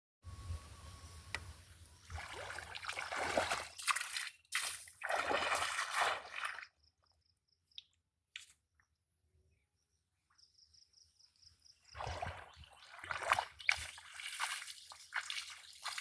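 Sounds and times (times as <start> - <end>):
water sloshing and splashing: 2.0 - 6.8, 11.9 - 16.0.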